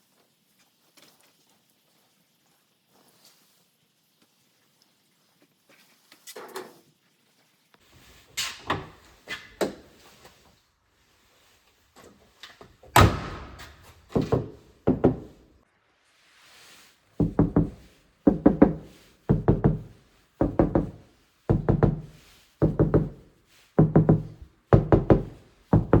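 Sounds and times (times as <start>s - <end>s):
knuckles knocking on car bonnet: 14.2s - 15.3s, 17.2s - 23.2s, 23.8s - 26.0s.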